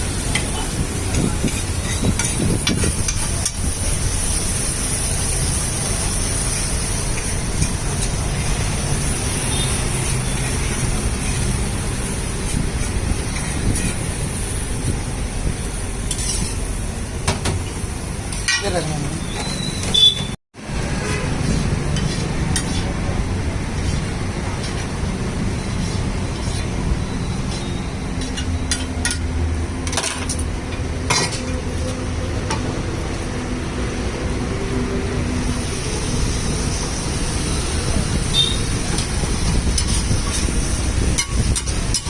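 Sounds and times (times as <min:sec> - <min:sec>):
food sizzling: 0:00.0 - 0:18.5, 0:35.3 - 0:42.0
street traffic: 0:00.0 - 0:42.0
metal spatula scraping a griddle: 0:01.2 - 0:03.6, 0:09.2 - 0:14.0, 0:16.1 - 0:16.6, 0:20.9 - 0:23.0, 0:25.8 - 0:26.8, 0:38.4 - 0:42.0.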